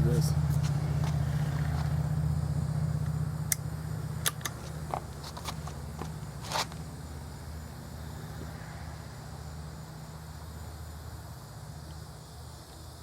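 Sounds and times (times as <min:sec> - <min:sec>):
low engine hum: 0:00.0 - 0:13.0.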